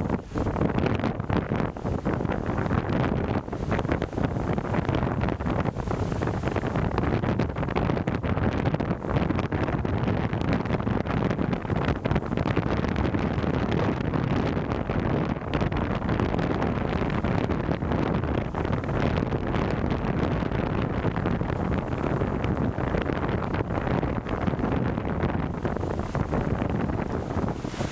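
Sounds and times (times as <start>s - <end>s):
strong wind buffeting microphone: 0.0s - 27.9s
sea surf: 3.4s - 7.7s, 25.4s - 27.9s.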